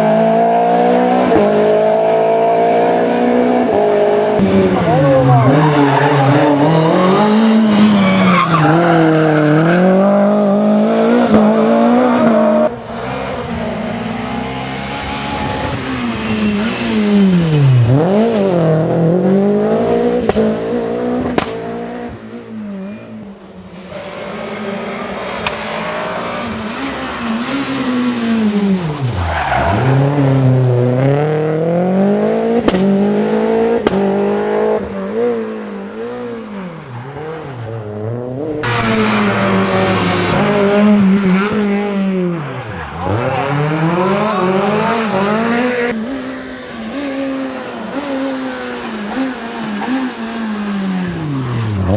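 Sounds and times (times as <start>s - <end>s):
rally car engine revving: 0.0s - 51.9s
tyres squealing: 28.8s - 30.6s.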